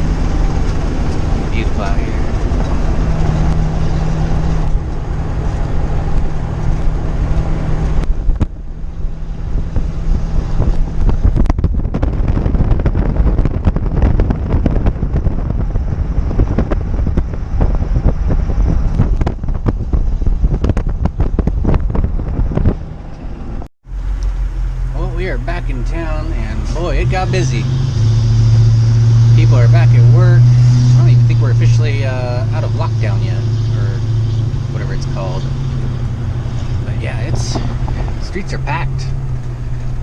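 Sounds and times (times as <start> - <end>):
engine and road drone: 0.0 - 40.0
wind noise: 0.0 - 40.0.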